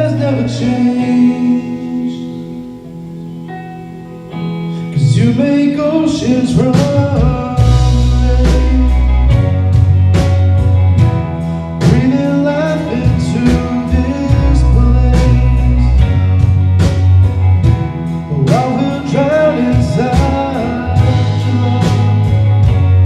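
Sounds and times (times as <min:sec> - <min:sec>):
person singing: 0:00.0 - 0:02.8, 0:04.7 - 0:09.8, 0:11.8 - 0:16.6, 0:18.2 - 0:23.0
bass guitar: 0:00.0 - 0:23.0
electric guitar: 0:00.0 - 0:23.0
drum kit beat: 0:06.6 - 0:23.0.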